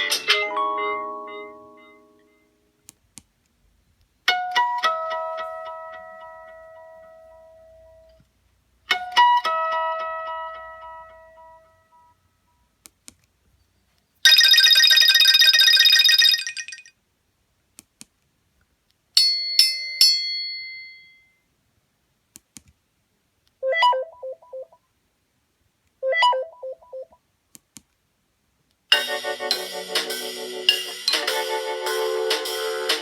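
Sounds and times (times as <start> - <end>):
ringtone melody with a beat: 0.0 - 2.4, 14.3 - 16.9, 23.6 - 24.8, 26.0 - 27.2, 28.9 - 33.0
phone alert tones: 14.3 - 16.8, 23.6 - 24.8, 26.0 - 27.2.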